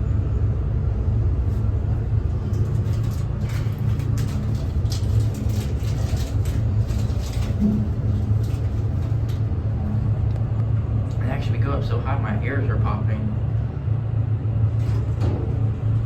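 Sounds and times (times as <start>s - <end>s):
elevator low rumble: 0.0s - 16.0s
light clicks and rattles: 1.5s - 11.3s, 14.7s - 16.0s.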